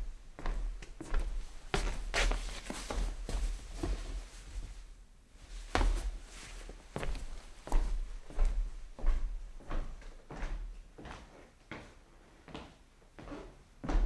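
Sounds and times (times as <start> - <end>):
slipper footsteps on wooden floor: 0.4 - 4.8, 5.5 - 11.9.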